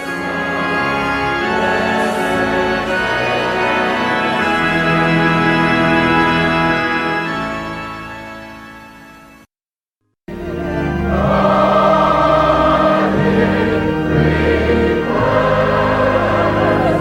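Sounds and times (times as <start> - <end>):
organ playing sustained chords: 0.0 - 9.5, 10.3 - 17.0.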